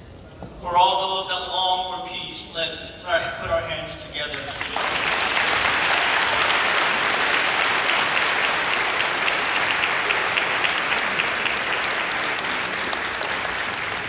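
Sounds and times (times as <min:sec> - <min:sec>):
crowd applauding: 0:04.3 - 0:14.0.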